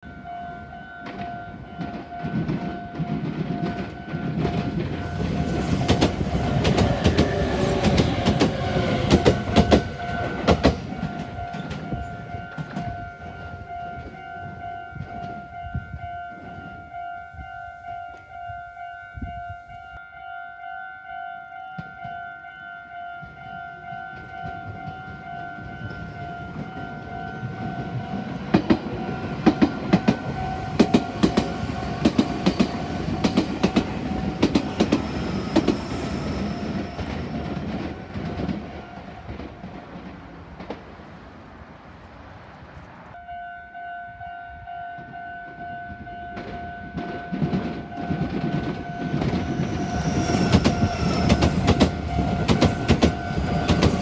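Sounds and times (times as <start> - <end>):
train wheels clattering: 1.0 - 14.2, 23.2 - 41.0, 46.4 - 54.0.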